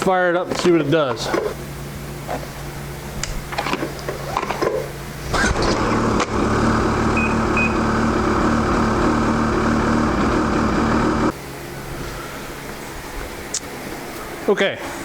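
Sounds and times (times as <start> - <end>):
snowmobile engine running: 5.6 - 11.3.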